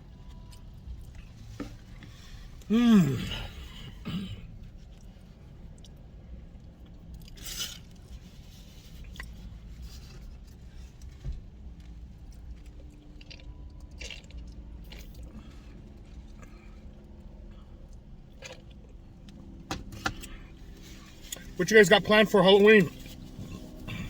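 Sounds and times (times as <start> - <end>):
person chewing food: 12.2 - 17.0.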